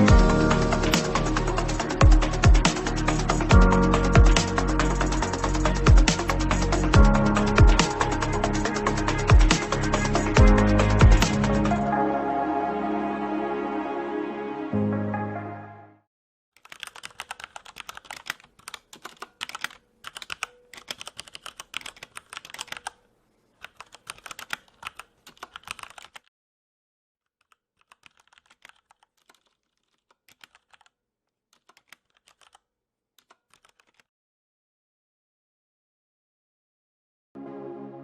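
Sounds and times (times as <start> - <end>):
mechanical keyboard typing: 0.5 - 11.8, 16.6 - 26.3, 27.4 - 32.6, 33.2 - 34.1.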